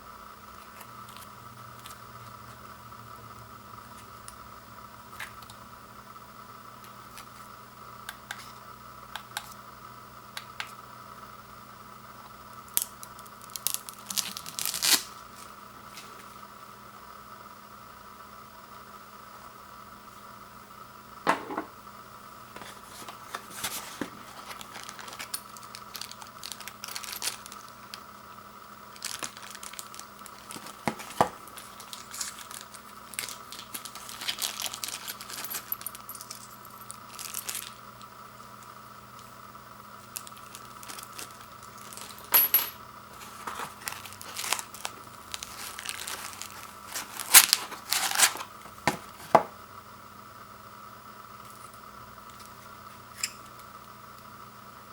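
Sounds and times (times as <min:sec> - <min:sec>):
faint steady hum: 0:00.0 - 0:54.9
plastic and cardboard rustling: 0:22.6 - 0:28.0, 0:28.9 - 0:37.8, 0:40.1 - 0:42.4, 0:43.1 - 0:49.5.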